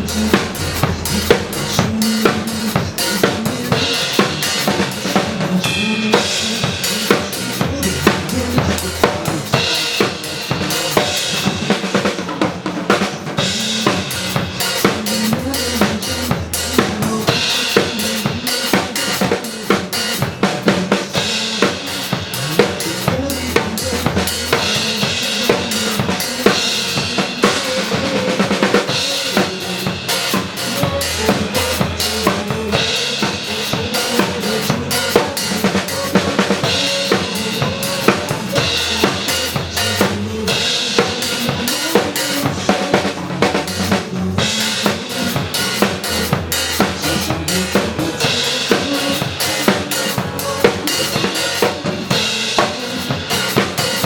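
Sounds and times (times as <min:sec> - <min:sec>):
drum kit playing a groove: 0:00.0 - 0:54.0
pop backing track with bass: 0:00.0 - 0:54.0.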